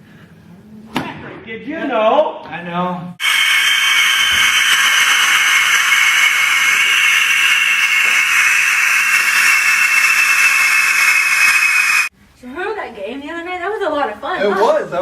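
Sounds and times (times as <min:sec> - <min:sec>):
loud steady hiss: 0:03.2 - 0:12.1.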